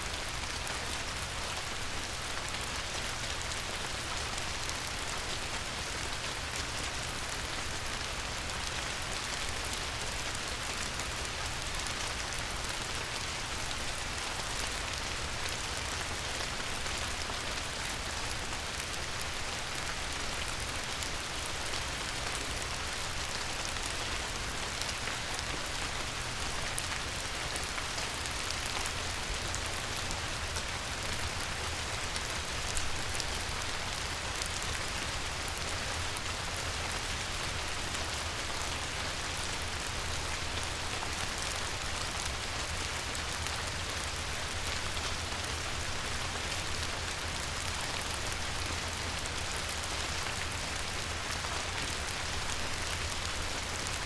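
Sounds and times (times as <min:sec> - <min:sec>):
light rain on a river: 0:00.0 - 0:54.0.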